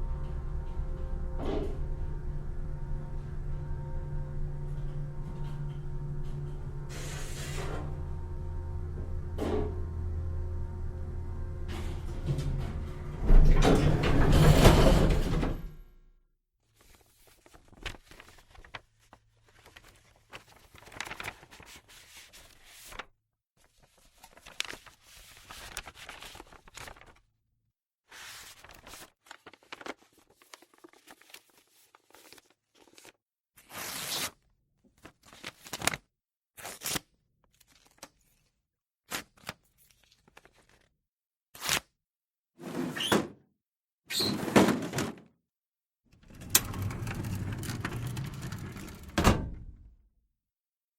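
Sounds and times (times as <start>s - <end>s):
paper rustling: 16.8s - 23.0s, 23.7s - 27.2s, 28.2s - 34.2s
paper tearing: 32.1s - 34.4s, 36.6s - 37.1s, 41.6s - 41.9s.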